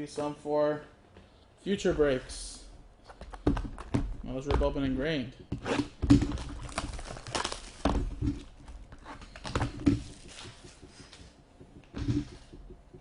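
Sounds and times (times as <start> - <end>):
cardboard rustling: 5.9 - 11.3.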